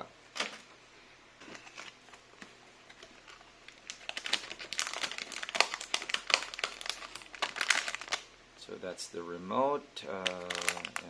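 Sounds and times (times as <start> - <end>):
packaging crinkling: 0.3 - 0.7, 1.4 - 8.3, 10.1 - 11.0.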